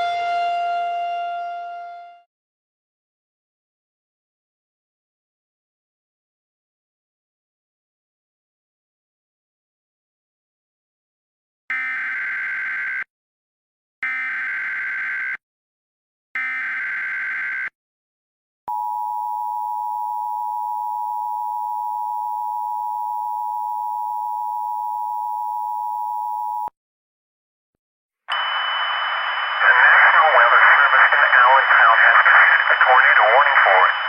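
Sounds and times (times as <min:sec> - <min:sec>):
radio static with high whine: 0:29.0 - 0:34.0.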